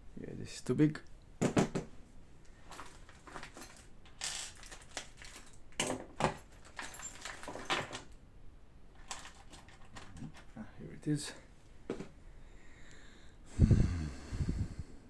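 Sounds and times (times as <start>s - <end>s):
metal hex keys clinking: 2.6s - 8.2s, 9.0s - 10.6s.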